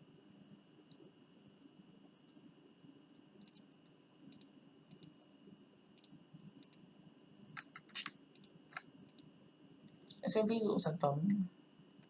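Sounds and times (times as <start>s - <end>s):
low background hum: 0.0s - 12.0s
computer mouse clicks: 3.1s - 3.7s, 4.3s - 5.2s, 6.0s - 6.8s, 7.6s - 9.3s.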